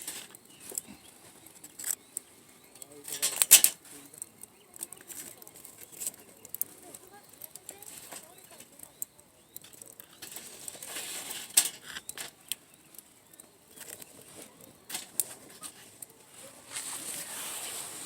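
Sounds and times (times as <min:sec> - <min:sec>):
campfire crackling and popping: 0:00.0 - 0:18.0
rushing hiss: 0:16.7 - 0:18.0.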